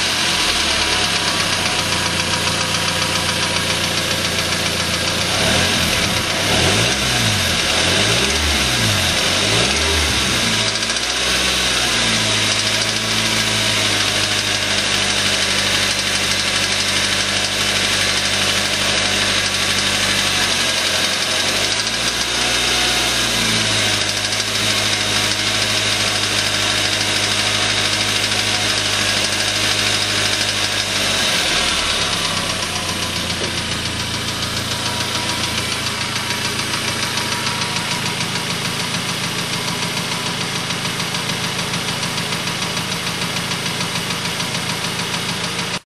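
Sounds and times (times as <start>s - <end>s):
car engine with rod knock: 26.2s - 41.0s.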